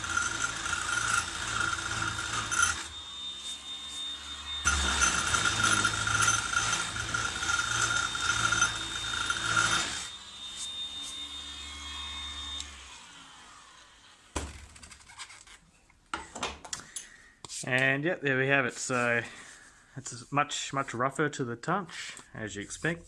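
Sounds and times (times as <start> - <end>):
orbital sander sanding wood: 0.0 - 11.8.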